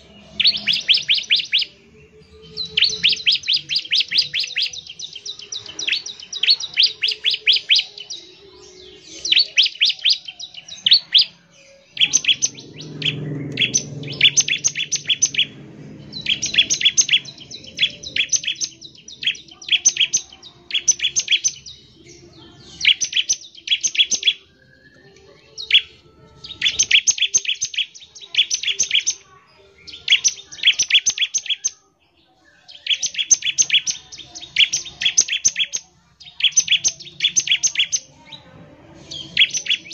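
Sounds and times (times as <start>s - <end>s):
bird chattering song: 0.0s - 38.4s, 39.0s - 39.9s
low rumble: 12.4s - 18.2s.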